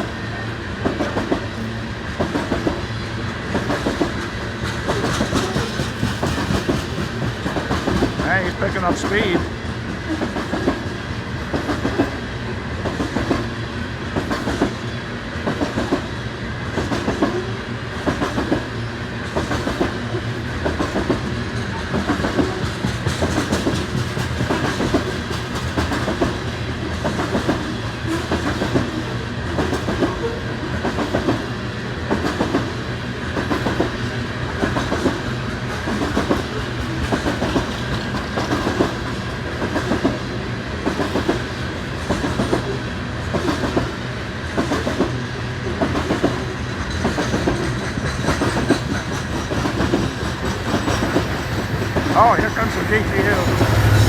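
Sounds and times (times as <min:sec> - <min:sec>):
freight train cars rolling: 0:00.0 - 0:54.0
wheels clicking over rail joints: 0:45.8 - 0:52.2.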